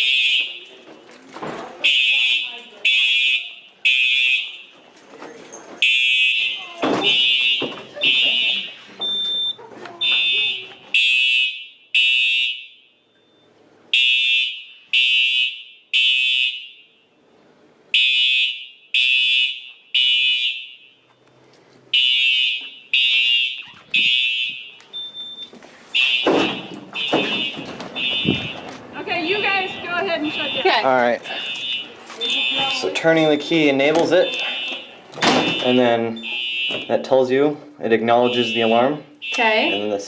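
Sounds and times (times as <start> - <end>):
fire alarm horn blasts: 0.0 - 0.8, 1.8 - 4.8, 5.8 - 13.2, 13.9 - 17.3, 17.9 - 21.1, 21.9 - 25.4, 26.0 - 37.1, 38.2 - 40.0
voices: 0.0 - 11.2, 26.0 - 40.0.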